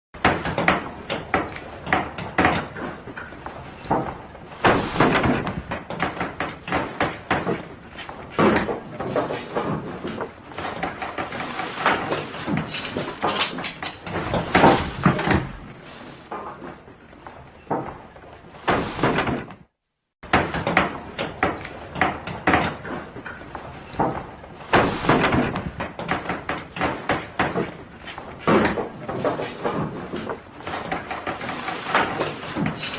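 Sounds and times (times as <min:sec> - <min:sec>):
wooden knocks and clatter: 0:00.2 - 0:32.9
wood and tools knocking: 0:08.4 - 0:15.3.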